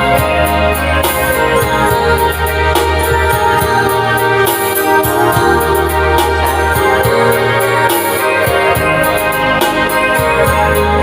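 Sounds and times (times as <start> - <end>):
live instrumental pop music: 0.0 - 11.0.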